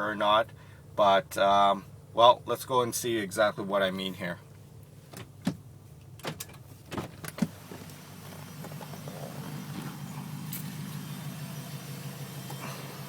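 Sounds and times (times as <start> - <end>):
engine running with buzz: 4.5 - 13.0.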